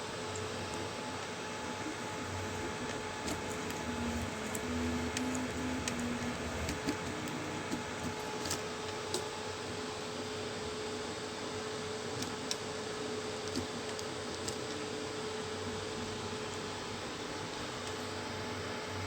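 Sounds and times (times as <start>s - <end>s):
fan hiss and hum: 0.0s - 19.0s
stepper motors whining: 1.8s - 8.5s.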